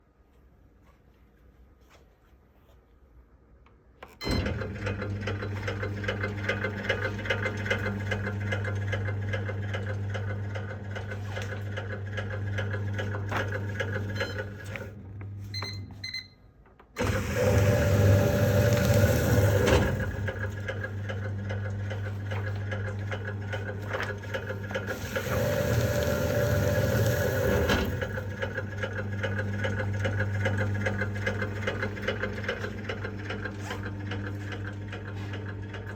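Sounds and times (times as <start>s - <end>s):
paper shredder running: 4.3s - 15.5s, 17.0s - 35.9s
shredder rattle: 17.0s - 35.9s.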